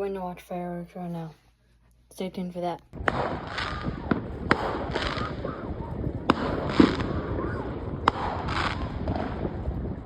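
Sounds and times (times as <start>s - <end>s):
fireworks bangs: 3.0s - 10.0s
fireworks crackle: 3.0s - 10.0s.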